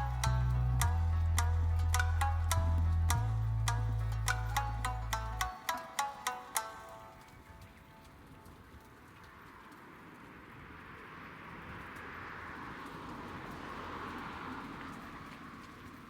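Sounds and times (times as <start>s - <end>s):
low rumble: 0.0s - 5.4s.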